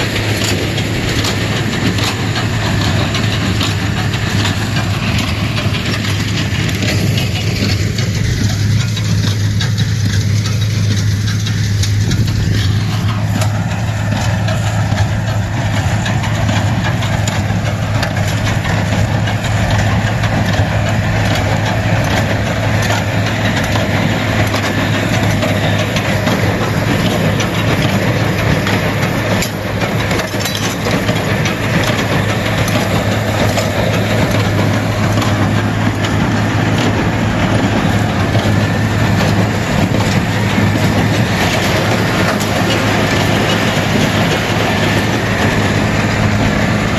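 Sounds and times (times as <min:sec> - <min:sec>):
baler machinery noise: 0:00.0 - 0:46.9
tractor engine humming: 0:00.0 - 0:46.9.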